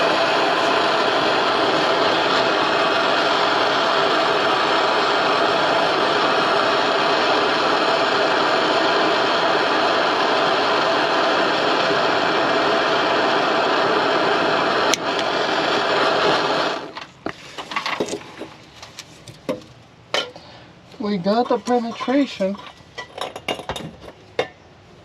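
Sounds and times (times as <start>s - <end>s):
gas torch hissing: 0.0s - 19.1s.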